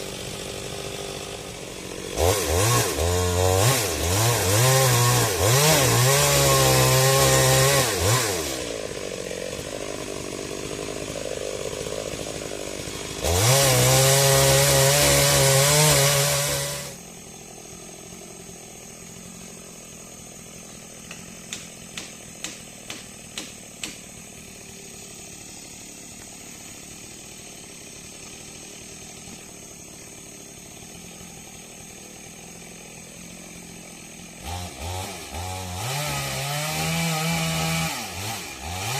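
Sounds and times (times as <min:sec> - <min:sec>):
chainsaw cutting wood: 0:00.0 - 0:38.9
sharp knocks: 0:21.1 - 0:24.0.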